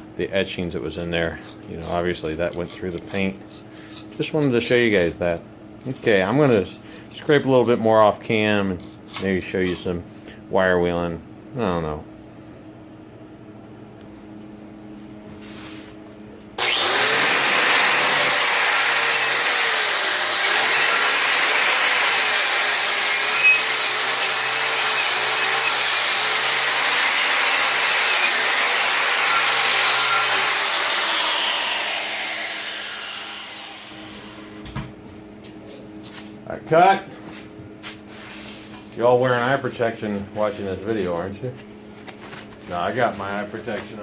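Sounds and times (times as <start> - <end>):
power tool wire wheel whine: 16.6 - 34.7.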